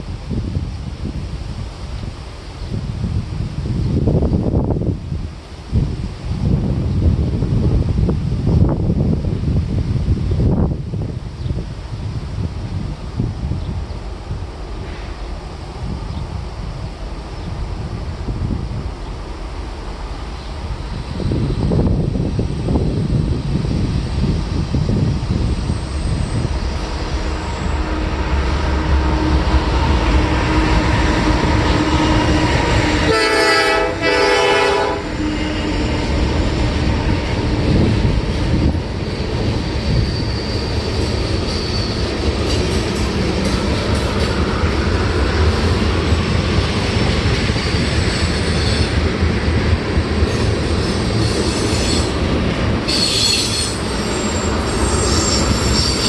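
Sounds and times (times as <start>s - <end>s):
train rumbling past: 0.0s - 56.0s
wheels squealing on rail: 20.3s - 56.0s
train air horn: 27.4s - 36.3s, 52.9s - 56.0s.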